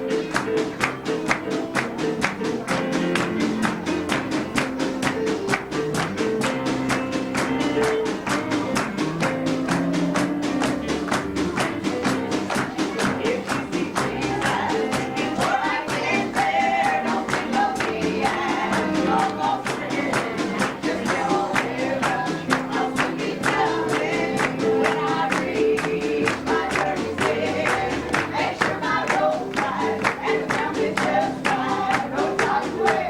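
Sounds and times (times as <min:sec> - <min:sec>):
gospel band playing: 0:00.0 - 0:33.0
person singing: 0:00.0 - 0:33.0.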